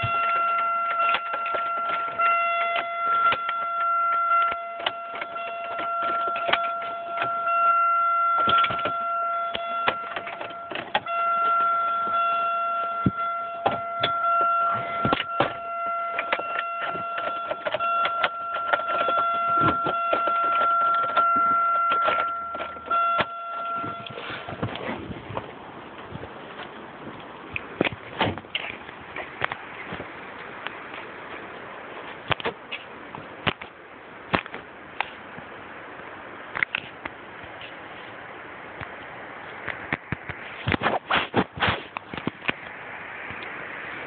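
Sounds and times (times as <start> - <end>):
steady electronic tone: 0.0 - 24.6.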